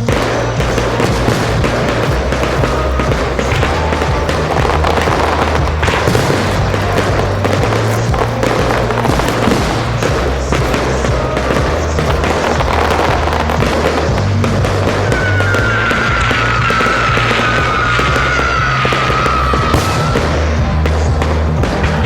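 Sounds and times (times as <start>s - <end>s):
fireworks bangs and crackles: 0.0s - 22.0s
loud music with bass: 0.0s - 22.0s.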